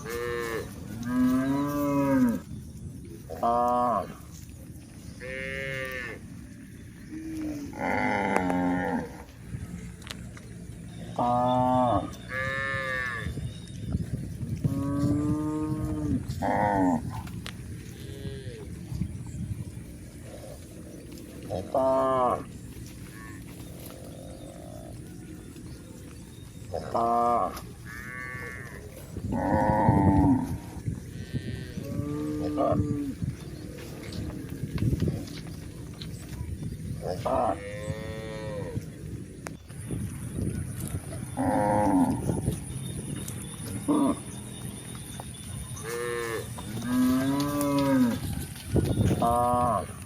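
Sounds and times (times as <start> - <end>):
cattle mooing: 0.0 - 2.4, 5.2 - 6.2, 7.1 - 9.3, 11.2 - 13.4, 21.5 - 22.5, 26.7 - 33.2, 37.0 - 38.9, 41.4 - 42.4, 43.7 - 44.6, 45.7 - 48.4, 49.1 - 50.0.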